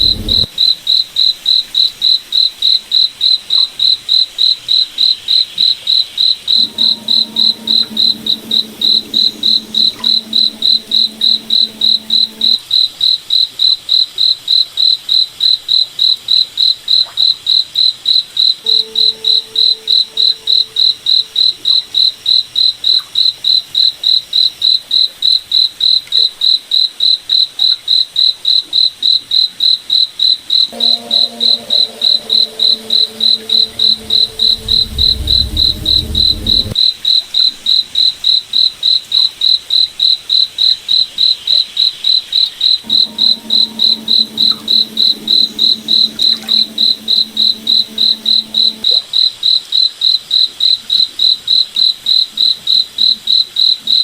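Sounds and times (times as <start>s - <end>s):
faint low hum: 0.0s - 0.5s, 6.6s - 12.6s, 30.7s - 36.8s, 42.8s - 48.9s
cricket chirping: 0.0s - 12.6s, 30.2s - 36.8s, 42.8s - 49.0s.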